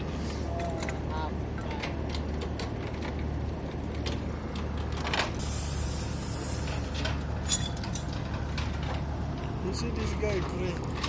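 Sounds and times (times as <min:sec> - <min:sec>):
compressed-air hiss: 0:05.4 - 0:07.1
diesel engine idling: 0:05.4 - 0:10.3.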